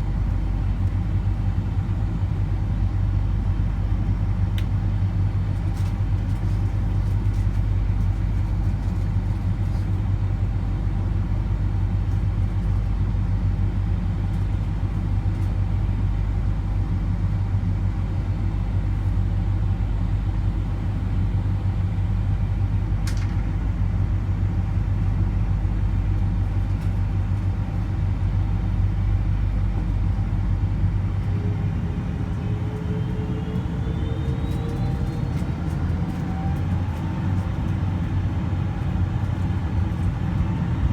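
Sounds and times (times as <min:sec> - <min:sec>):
aircraft cabin engine rumble: 0:00.0 - 0:40.9
rising engine whine: 0:29.0 - 0:40.9.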